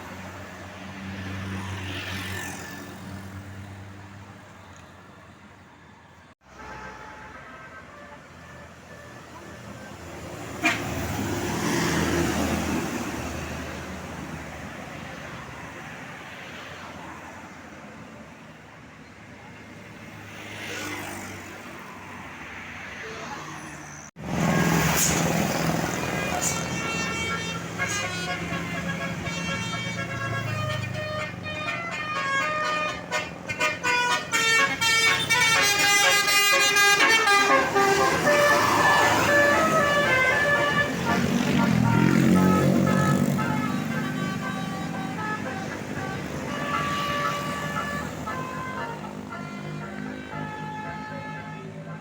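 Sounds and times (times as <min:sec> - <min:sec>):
road and air noise: 0:00.0 - 0:52.0
loud bus close by: 0:06.4 - 0:20.2, 0:21.6 - 0:52.0
vehicle passing: 0:22.6 - 0:50.5.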